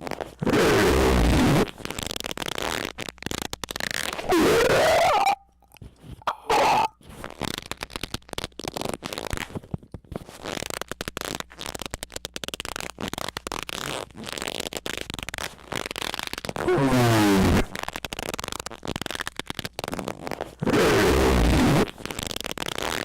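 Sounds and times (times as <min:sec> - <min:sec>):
harsh squeaking and crackling: 0:01.2 - 0:09.3
distorted falling squeak: 0:04.1 - 0:05.5, 0:06.3 - 0:06.9.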